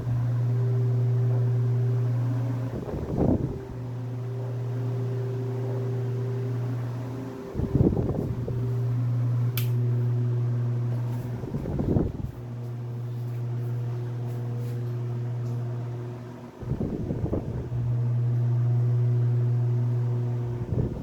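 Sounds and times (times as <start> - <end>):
fan rattling: 0.0 - 10.3, 10.9 - 21.0
electric fan motor humming: 0.0 - 21.0
sharp click: 9.6 - 9.8.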